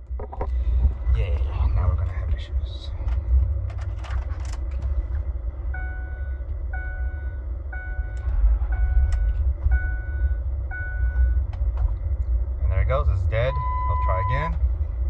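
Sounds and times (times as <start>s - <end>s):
truck engine running unevenly: 0.0s - 15.0s
dashboard warning chime: 5.7s - 11.4s, 13.5s - 14.5s.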